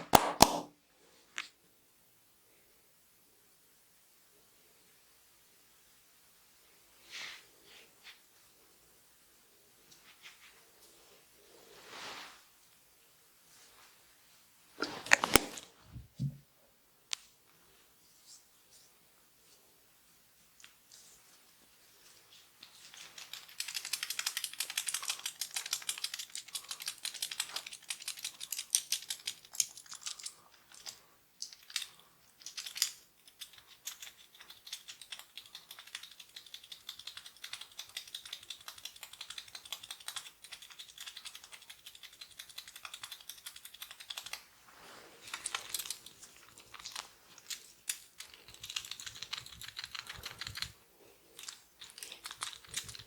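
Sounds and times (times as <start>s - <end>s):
oiled hands massaging skin and hair: 9.7s - 12.8s, 17.5s - 53.0s.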